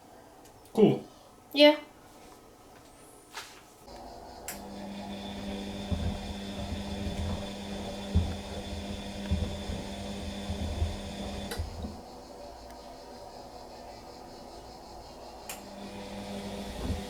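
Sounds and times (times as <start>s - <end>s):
washing machine motor humming: 3.9s - 12.5s, 15.3s - 17.0s
shoes thudding in drum: 4.6s - 12.0s.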